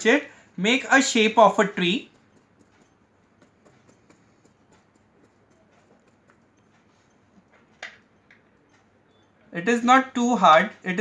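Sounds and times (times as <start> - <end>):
brush tapping on paper: 0.8 - 8.9.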